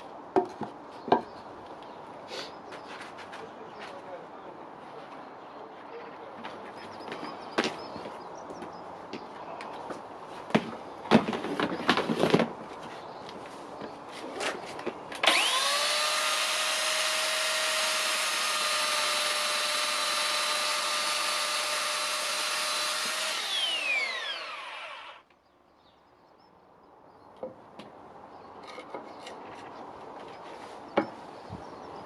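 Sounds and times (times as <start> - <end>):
electric chainsaw motor whining: 15.2 - 25.2.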